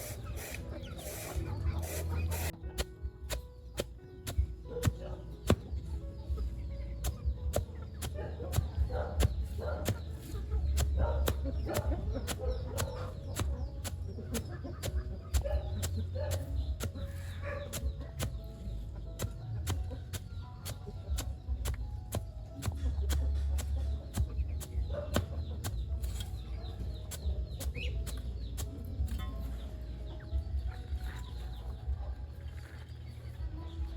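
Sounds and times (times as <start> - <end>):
chickens clucking: 0.0 - 32.2.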